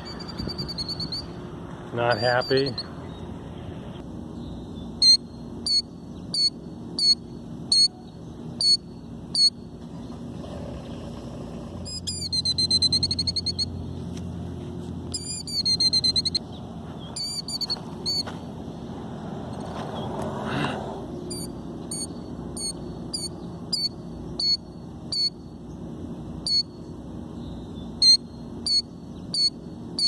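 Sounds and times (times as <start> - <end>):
shrill bird alarm calls: 4.4 - 9.6, 11.9 - 13.8, 27.4 - 30.0
rapid bird trills: 4.4 - 13.9.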